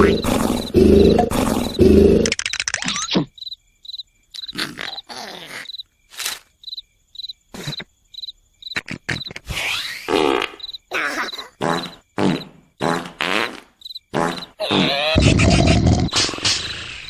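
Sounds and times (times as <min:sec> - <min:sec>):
cartoon wordless vocal noises: 0:00.0 - 0:03.4, 0:04.4 - 0:05.8, 0:10.9 - 0:13.2, 0:14.1 - 0:17.0
crickets chirping: 0:00.0 - 0:17.0.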